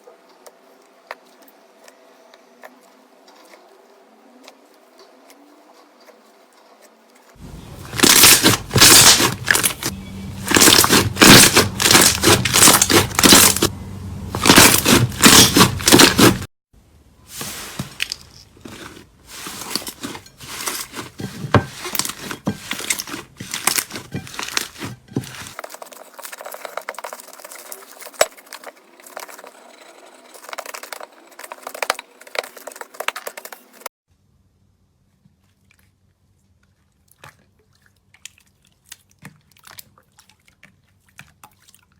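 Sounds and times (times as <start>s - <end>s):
slime crackling and popping: 7.9s - 13.7s, 14.4s - 16.4s.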